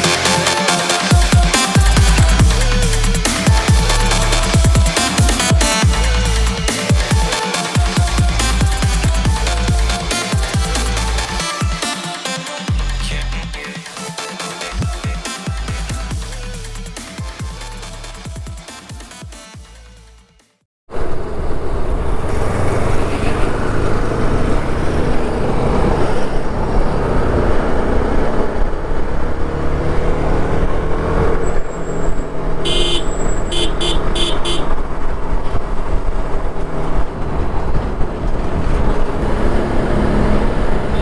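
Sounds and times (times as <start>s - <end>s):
horn blast and toots: 0.0s - 20.1s, 32.6s - 34.8s.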